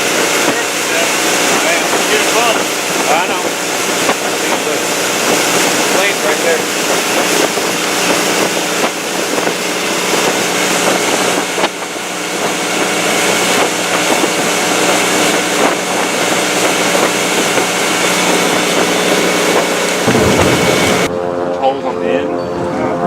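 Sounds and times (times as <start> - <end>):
wind and water rushing: 0.0 - 21.3
motorboat engine drone: 0.0 - 23.0.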